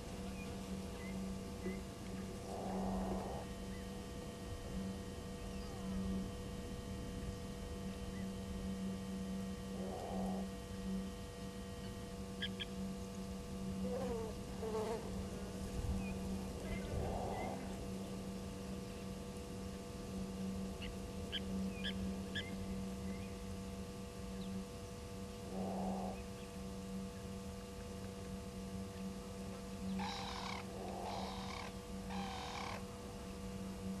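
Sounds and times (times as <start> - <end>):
steady electrical hum: 0.0 - 34.0
animal calling: 16.7 - 17.8, 30.0 - 32.8.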